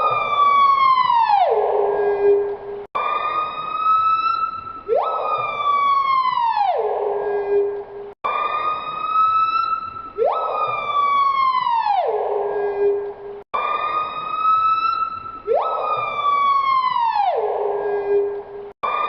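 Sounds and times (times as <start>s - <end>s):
siren-like wail: 0.0s - 19.0s.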